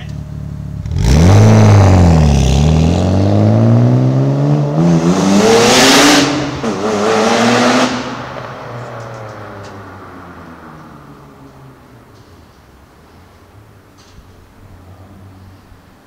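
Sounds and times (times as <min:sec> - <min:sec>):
car engine accelerating hard: 0:00.7 - 0:08.8.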